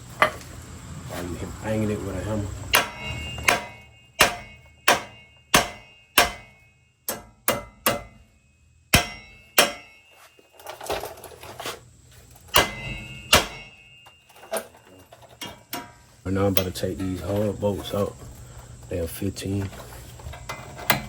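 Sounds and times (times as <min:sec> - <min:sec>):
hammer striking steel: 0:02.7 - 0:10.3, 0:12.5 - 0:14.8.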